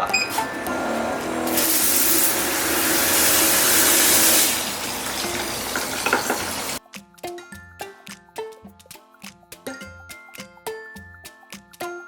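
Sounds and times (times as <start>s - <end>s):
steam cleaner hissing: 0.0s - 6.8s
background music: 3.2s - 12.0s.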